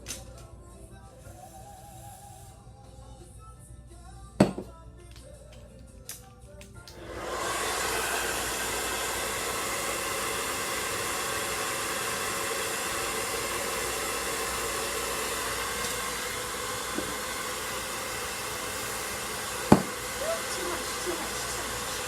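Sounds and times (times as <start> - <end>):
blow dryer hissing: 1.2 - 2.7, 6.9 - 22.0.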